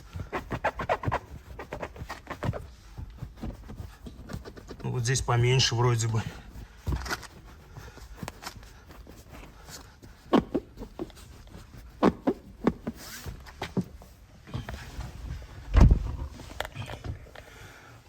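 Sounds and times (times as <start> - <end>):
car seat creaking: 10.2 - 17.4
low thump: 15.7 - 16.2.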